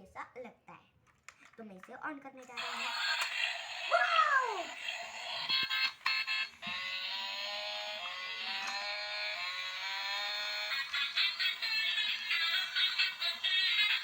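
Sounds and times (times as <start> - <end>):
toy switch clicks: 2.6 - 3.7, 8.6 - 8.8
pulsing electronic sound: 2.6 - 14.0.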